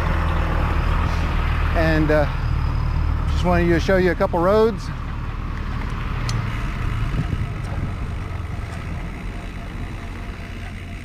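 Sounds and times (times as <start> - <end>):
bike rolling on dirt road: 4.4 - 11.0.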